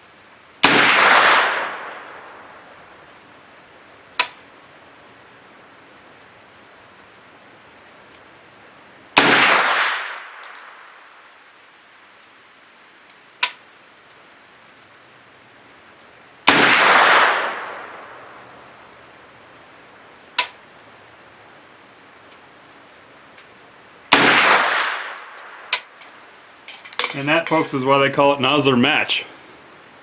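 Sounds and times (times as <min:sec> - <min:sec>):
gunshots with echoing tail: 0:00.6 - 0:02.7, 0:09.2 - 0:10.4, 0:16.5 - 0:18.7, 0:24.1 - 0:25.7
sharp cracks: 0:00.6 - 0:03.2, 0:09.2 - 0:11.2, 0:13.4 - 0:13.7, 0:16.0 - 0:19.0, 0:20.2 - 0:20.9, 0:23.4 - 0:27.8.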